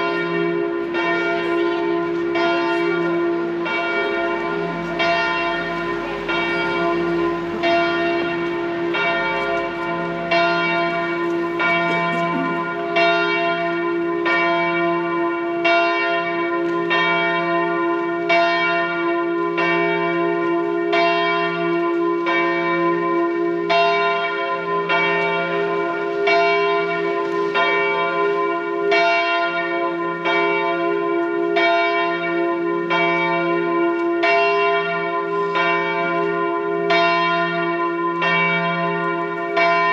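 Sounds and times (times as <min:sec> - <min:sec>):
church bells ringing: 0:00.0 - 0:39.9
low humming bell note: 0:02.8 - 0:13.3.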